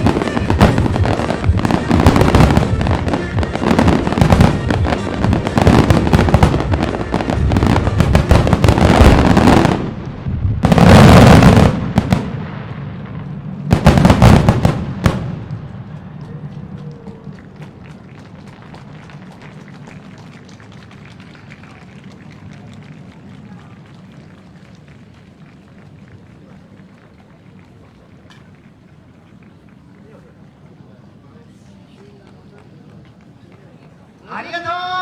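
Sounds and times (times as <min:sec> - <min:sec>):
music: 0:00.0 - 0:09.8
fireworks crackling and booming: 0:00.0 - 0:30.7.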